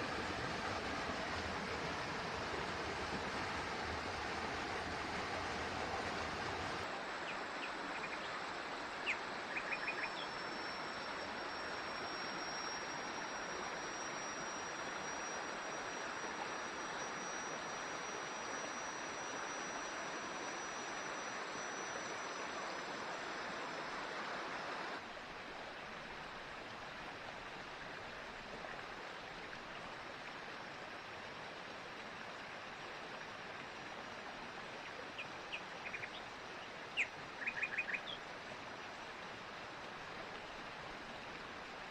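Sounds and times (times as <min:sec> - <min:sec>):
thin high whine: 0:00.0 - 0:25.2
stream running: 0:00.0 - 0:41.9.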